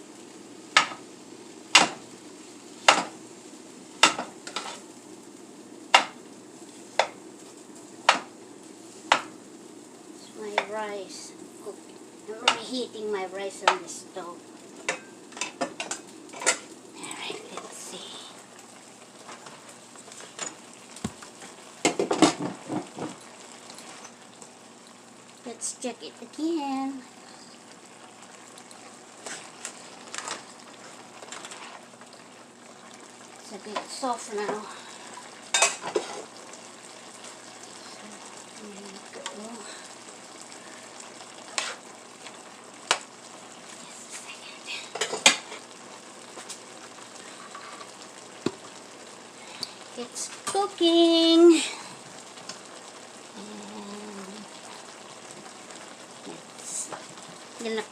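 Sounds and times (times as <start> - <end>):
rice sizzling: 0.0 - 57.9
utensil scraping in a pan: 4.0 - 4.9, 29.2 - 31.9, 34.4 - 36.4, 41.5 - 41.9, 47.2 - 48.0.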